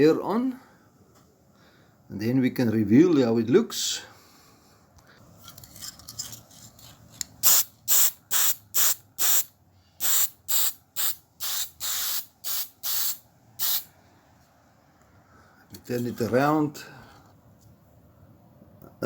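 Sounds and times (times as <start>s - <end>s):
aerosol spray can hissing: 7.4s - 13.9s.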